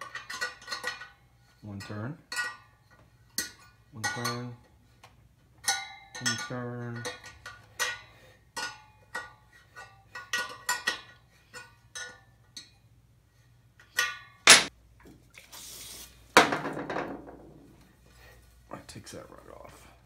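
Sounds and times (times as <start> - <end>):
spoke wrench clinking on spokes: 0.0 - 4.8, 5.6 - 12.8
loud metallic knocks: 14.5 - 14.7.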